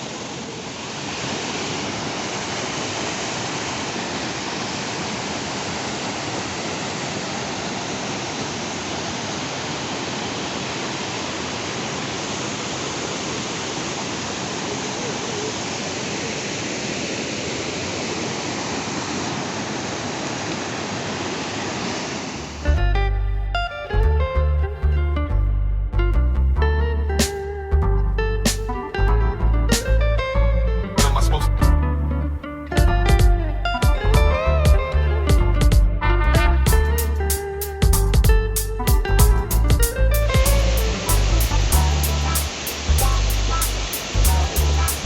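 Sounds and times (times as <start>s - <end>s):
waterfall rushing over rock: 0.0s - 22.6s, 40.3s - 45.0s.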